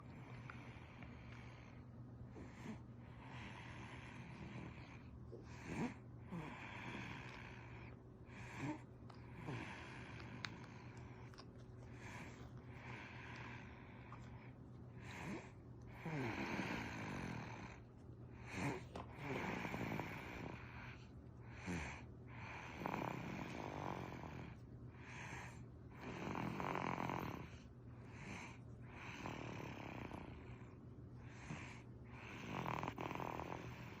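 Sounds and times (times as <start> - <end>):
baby snoring: 2.4 - 10.2, 15.0 - 17.8, 18.4 - 20.8, 21.6 - 24.6, 26.0 - 27.5, 31.3 - 34.0.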